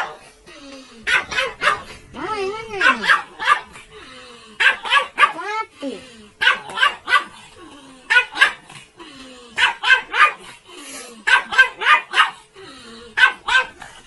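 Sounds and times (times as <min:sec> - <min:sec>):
dog barking: 0:00.0 - 0:00.2, 0:01.1 - 0:02.0, 0:02.8 - 0:03.8, 0:04.6 - 0:05.5, 0:06.4 - 0:07.4, 0:08.1 - 0:08.7, 0:09.6 - 0:10.6, 0:11.2 - 0:12.5, 0:13.2 - 0:13.8.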